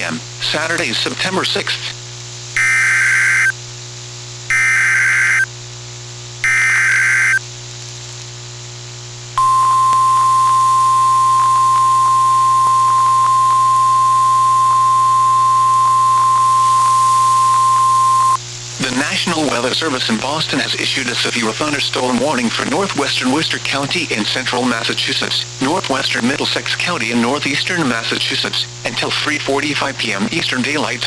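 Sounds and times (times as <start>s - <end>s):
low radio hum: 0.0s - 31.0s
screeching digital data bursts: 2.6s - 3.5s, 4.5s - 5.5s, 6.4s - 7.4s
steady alarm tone: 2.6s - 3.5s, 4.5s - 5.5s, 6.4s - 7.4s, 9.4s - 18.4s.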